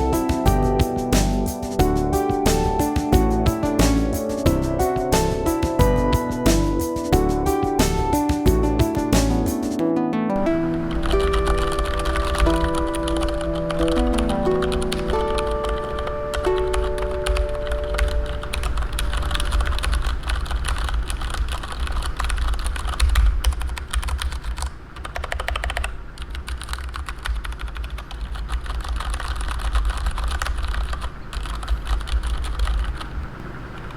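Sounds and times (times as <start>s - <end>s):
mechanical keyboard typing: 10.5s - 33.2s.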